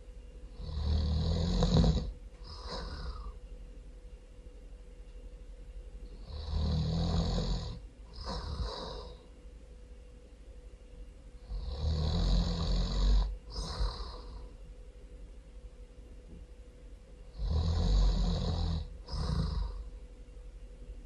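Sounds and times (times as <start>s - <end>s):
person snoring loudly: 0.5s - 3.4s, 6.2s - 9.2s, 11.4s - 14.5s, 17.3s - 19.9s.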